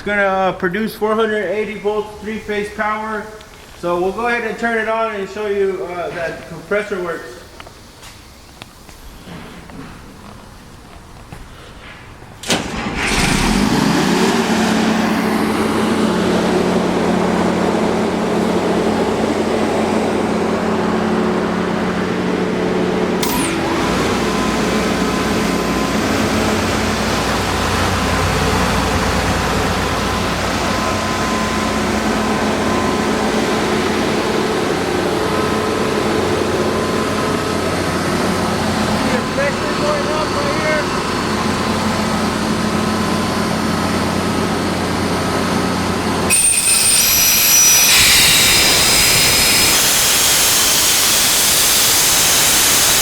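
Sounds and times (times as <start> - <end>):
air compressor running: 11.4 - 53.0.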